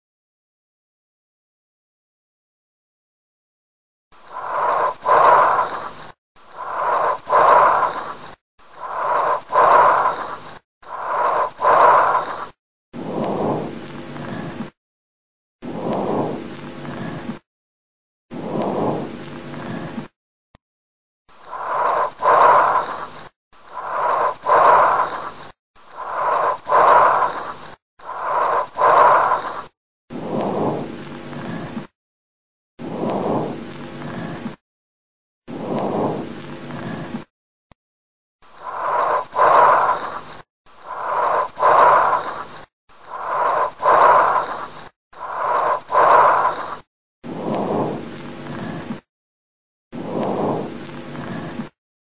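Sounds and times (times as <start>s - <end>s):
rushing airy breaths: 4.2s - 12.6s, 21.4s - 29.8s, 38.5s - 46.9s.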